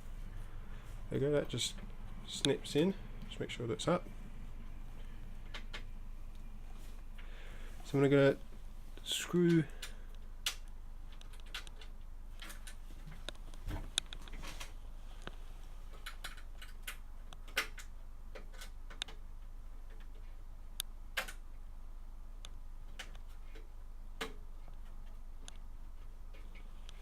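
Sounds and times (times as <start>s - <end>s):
low steady hum: 0.0s - 27.0s.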